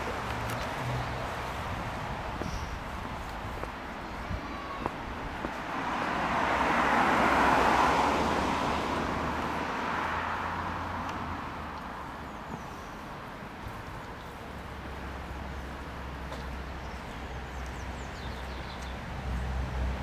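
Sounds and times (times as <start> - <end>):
vehicle passing by: 5.5 - 12.8.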